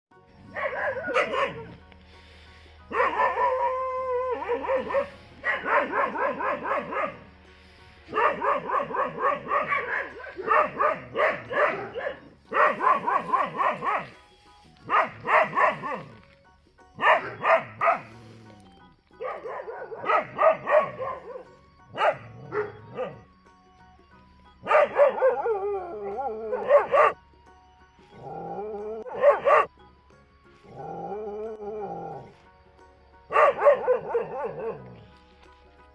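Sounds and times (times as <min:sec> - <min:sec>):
dog barking: 0:00.4 - 0:01.8, 0:02.9 - 0:07.3, 0:08.1 - 0:14.2, 0:14.8 - 0:16.2, 0:17.0 - 0:18.2, 0:19.2 - 0:23.2, 0:24.6 - 0:27.2, 0:29.0 - 0:29.7, 0:33.3 - 0:35.0.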